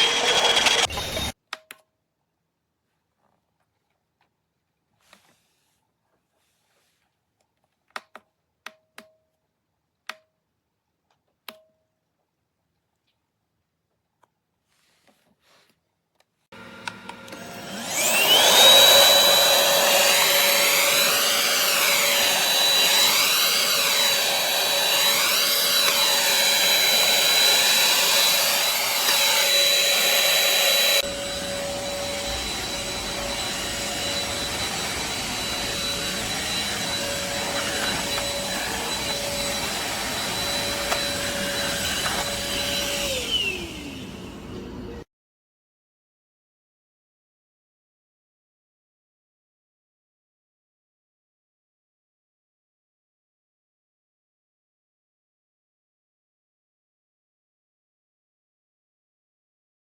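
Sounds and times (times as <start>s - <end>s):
vacuum cleaner motor whine: 0.0s - 1.4s, 16.6s - 45.0s.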